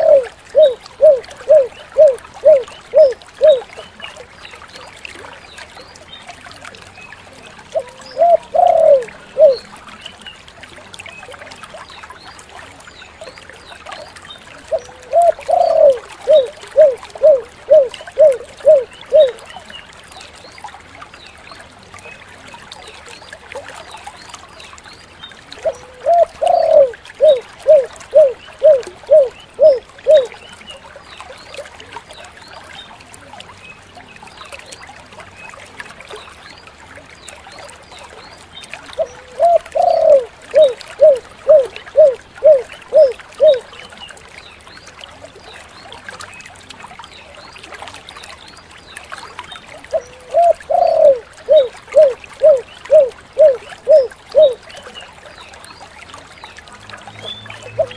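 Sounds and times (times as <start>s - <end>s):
dove cooing: 0.0s - 3.7s, 7.7s - 9.7s, 14.7s - 19.4s, 25.6s - 30.3s, 39.0s - 43.6s, 49.9s - 54.6s.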